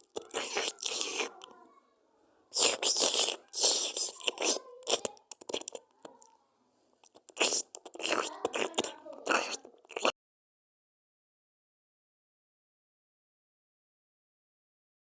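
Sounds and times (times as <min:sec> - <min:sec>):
cat crunching and chewing food: 0:00.0 - 0:01.5, 0:02.5 - 0:06.3, 0:07.0 - 0:10.1.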